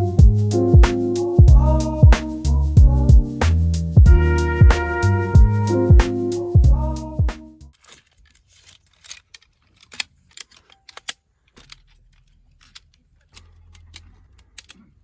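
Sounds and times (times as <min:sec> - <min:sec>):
light clicks and taps: 0:07.8 - 0:15.0.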